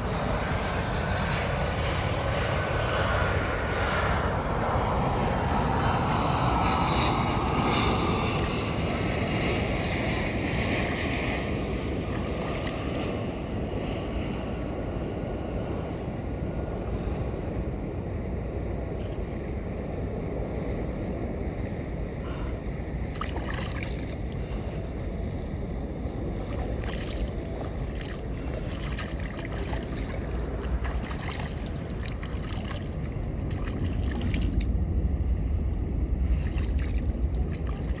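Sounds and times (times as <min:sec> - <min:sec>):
wind buffeting microphone: 0:00.0 - 0:38.0
water splashing: 0:12.0 - 0:13.1, 0:23.1 - 0:24.4, 0:26.4 - 0:34.7, 0:36.2 - 0:38.0.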